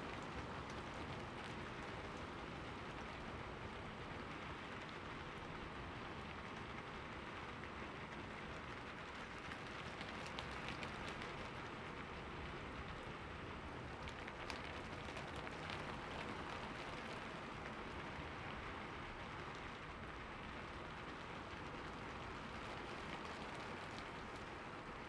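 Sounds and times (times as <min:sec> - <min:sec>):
steady rain patter: 0:00.0 - 0:25.0.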